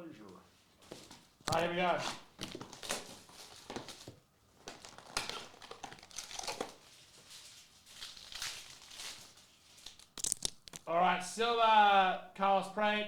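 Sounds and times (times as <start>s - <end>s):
foil wrappers tearing and crinkling: 1.5s - 10.9s.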